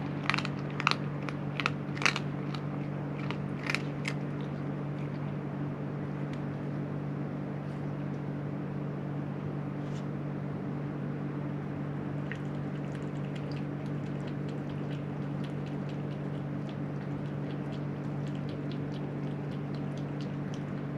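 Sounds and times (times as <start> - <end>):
cat chewing dry food: 0.0 - 5.4, 12.3 - 20.9
low machine hum: 0.0 - 20.9.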